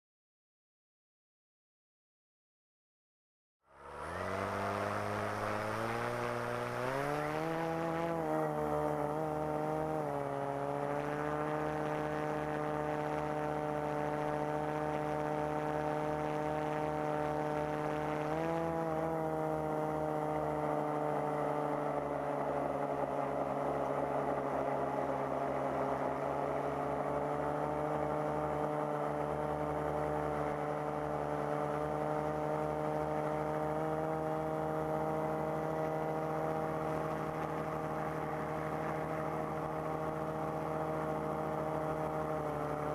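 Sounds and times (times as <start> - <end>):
drone motors whining: 3.7 - 42.9.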